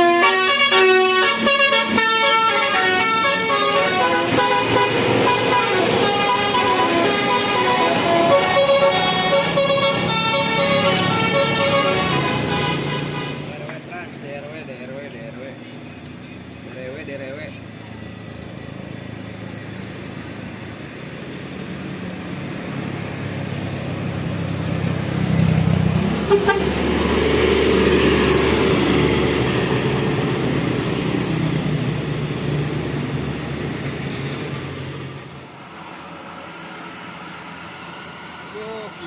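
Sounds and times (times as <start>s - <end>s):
bus horn: 0.0s - 13.7s, 26.0s - 30.2s
bus diesel engine passing: 0.0s - 39.0s.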